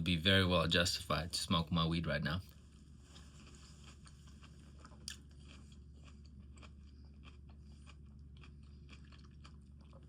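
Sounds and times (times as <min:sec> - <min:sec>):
faint chewing: 0:02.4 - 0:10.0.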